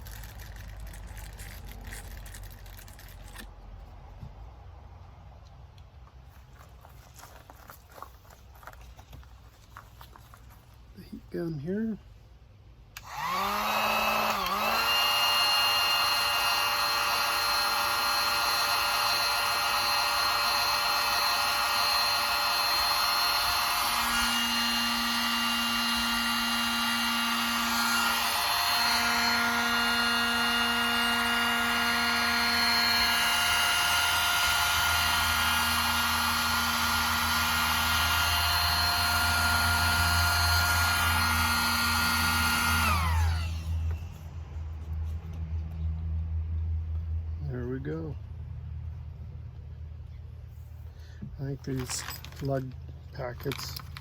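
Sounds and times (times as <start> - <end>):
heat gun fan blowing: 12.9 - 44.6.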